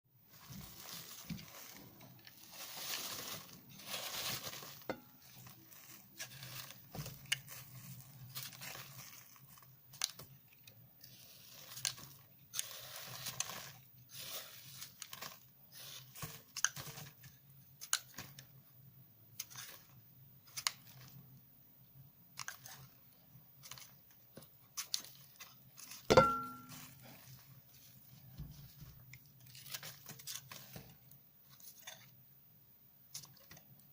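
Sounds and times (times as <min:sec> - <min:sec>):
soap crunching and scraping: 0:00.4 - 0:18.4.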